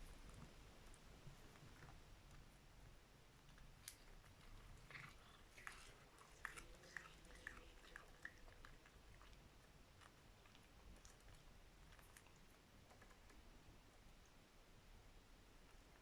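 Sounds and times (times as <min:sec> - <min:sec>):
pet chewing food: 0:03.4 - 0:14.0.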